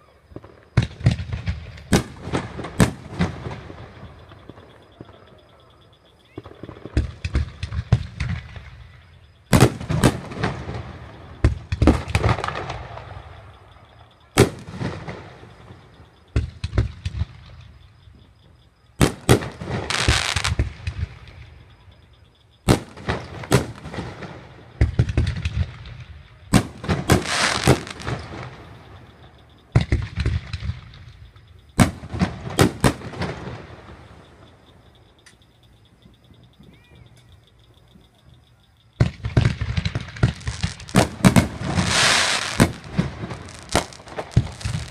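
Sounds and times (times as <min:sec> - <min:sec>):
fireworks bangs: 0:00.0 - 0:18.3, 0:19.0 - 0:35.2, 0:39.0 - 0:44.9
fireworks hissing crackle: 0:19.0 - 0:21.6, 0:22.7 - 0:34.5, 0:39.0 - 0:44.9.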